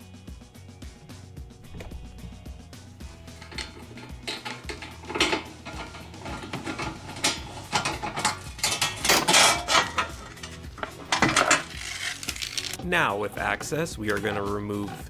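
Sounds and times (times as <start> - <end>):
screwdriver clicking and scraping: 3.1 - 12.8.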